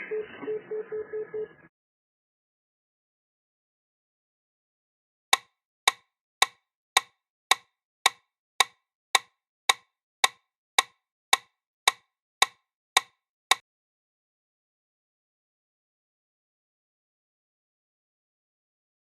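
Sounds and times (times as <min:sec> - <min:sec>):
metronome ticks: 0:05.4 - 0:13.6.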